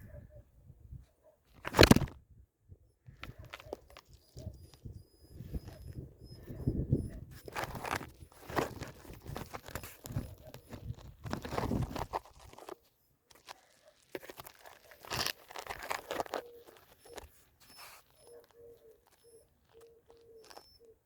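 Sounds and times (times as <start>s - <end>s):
crunching and rustling: 1.5s - 2.2s, 3.2s - 21.0s
dove cooing: 3.3s - 11.9s, 16.0s - 21.0s.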